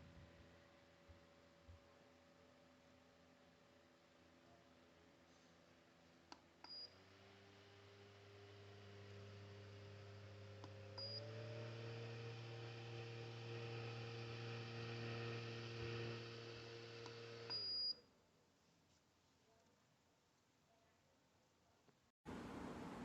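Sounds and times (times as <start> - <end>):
fan motor humming: 6.9 - 17.8.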